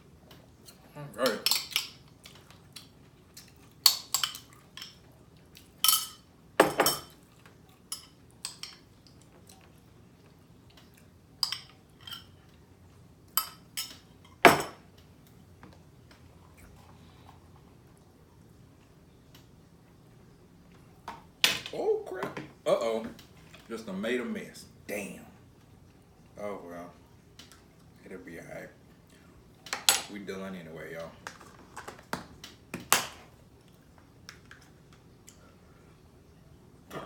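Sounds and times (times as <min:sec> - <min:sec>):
tableware clinking: 0:05.8 - 0:07.2, 0:13.4 - 0:14.8.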